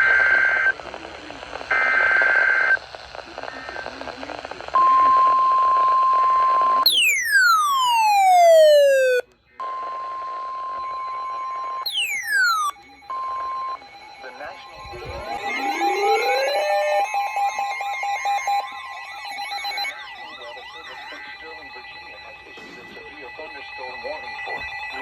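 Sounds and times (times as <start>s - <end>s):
steady alert tone: 6.9s - 9.2s, 11.9s - 12.7s, 14.8s - 17.4s
whistle-like falling sweep: 6.9s - 9.2s, 11.9s - 12.7s, 14.8s - 18.2s
buzzy digital header data: 14.8s - 18.8s.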